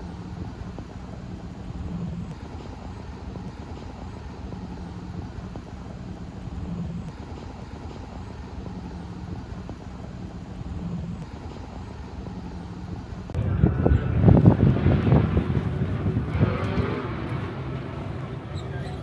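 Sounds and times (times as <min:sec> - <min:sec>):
engine idling rumble: 0:00.0 - 0:19.0.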